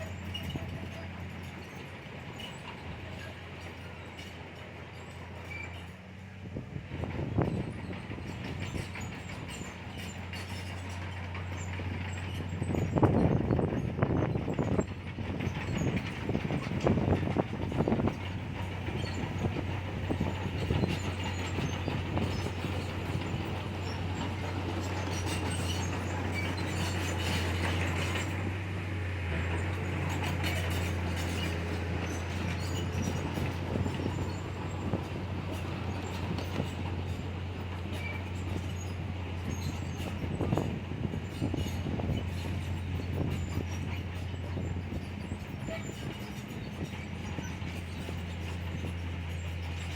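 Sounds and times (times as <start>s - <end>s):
bulldozer diesel engine: 0.0s - 49.9s
steel tracks clanking: 0.0s - 49.9s.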